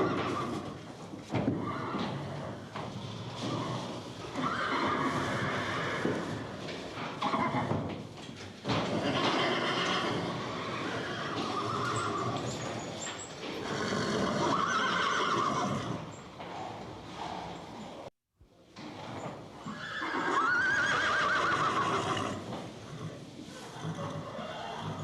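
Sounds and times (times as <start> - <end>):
horse neighing: 1.5 - 2.7, 3.3 - 6.4, 7.2 - 7.8, 8.8 - 12.7, 13.5 - 16.2, 19.6 - 25.0.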